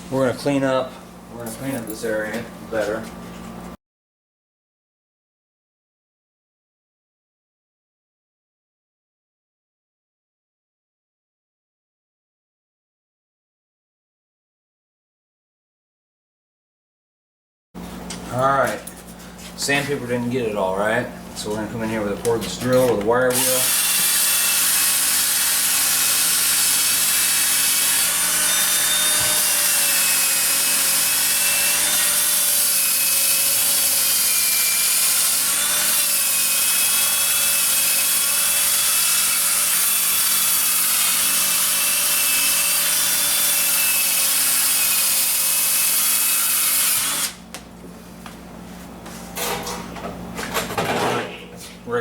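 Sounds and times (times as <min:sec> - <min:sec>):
drill wire wheel scrubbing metal: 0:23.3 - 0:42.8.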